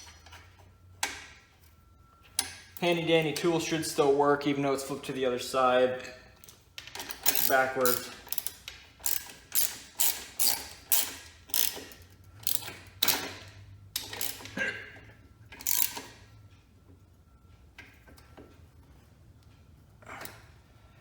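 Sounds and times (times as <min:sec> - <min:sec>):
ratchet wrench clicking: 0:06.4 - 0:14.6, 0:15.5 - 0:16.2.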